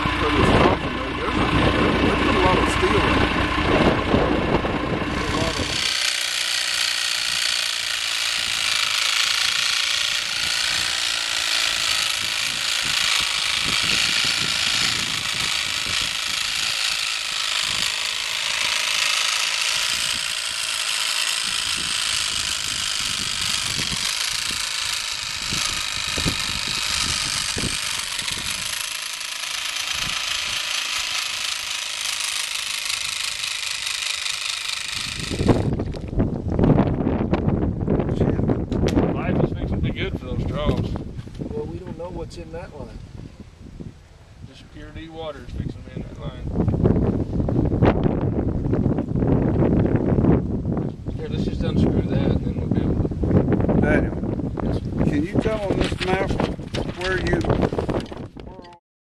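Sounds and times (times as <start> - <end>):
machine running: 0.0 - 36.0.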